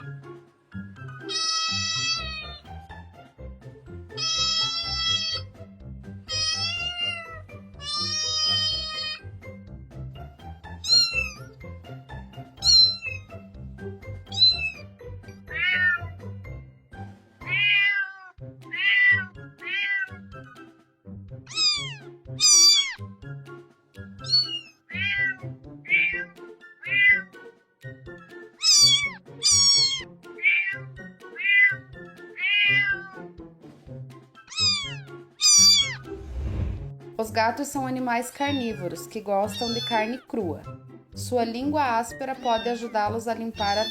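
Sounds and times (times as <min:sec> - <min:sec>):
soft background music: 0:00.0 - 0:43.9
kittens meowing: 0:01.2 - 0:02.6, 0:04.2 - 0:05.5, 0:06.3 - 0:09.3, 0:10.8 - 0:11.5, 0:12.6 - 0:13.3, 0:14.3 - 0:16.2, 0:17.4 - 0:20.2, 0:21.5 - 0:23.0, 0:24.2 - 0:27.3, 0:28.6 - 0:33.2, 0:34.5 - 0:36.0, 0:39.5 - 0:40.3, 0:43.6 - 0:43.9.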